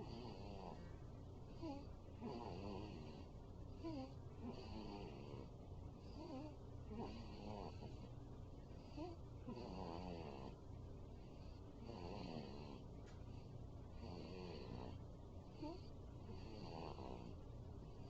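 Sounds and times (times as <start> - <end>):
baby snoring: 0.0 - 0.9, 1.6 - 5.5, 6.1 - 8.0, 8.9 - 10.6, 11.8 - 12.8, 14.0 - 15.0, 15.6 - 17.3.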